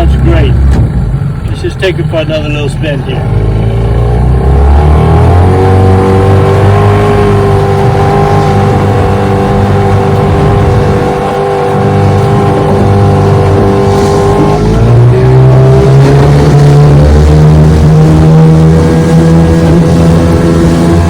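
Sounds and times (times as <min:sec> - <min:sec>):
outboard motor running: 0:00.0 - 0:21.0.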